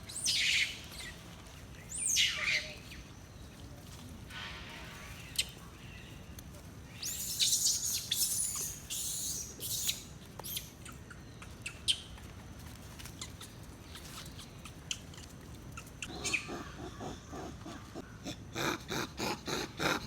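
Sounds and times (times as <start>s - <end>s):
animal chirping and squeaking: 1.9s - 2.9s, 6.9s - 12.2s, 13.2s - 18.0s.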